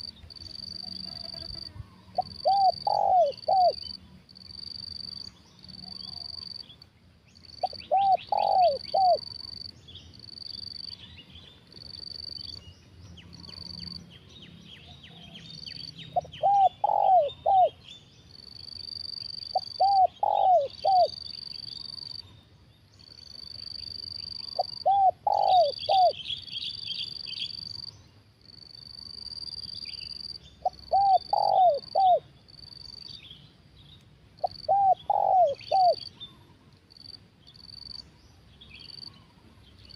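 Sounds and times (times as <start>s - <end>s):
insect buzzing: 0.0s - 3.1s
dove cooing: 2.1s - 3.9s, 7.6s - 9.5s, 16.2s - 17.8s, 19.5s - 21.2s, 24.4s - 26.3s, 30.6s - 32.3s, 34.4s - 36.5s.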